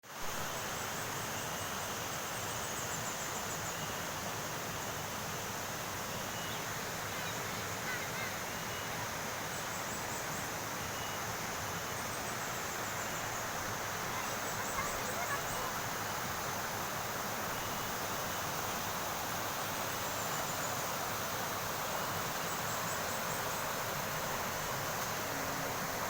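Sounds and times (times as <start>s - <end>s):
insects chirring: 0.4s - 26.0s
waterfall rushing: 13.2s - 26.0s.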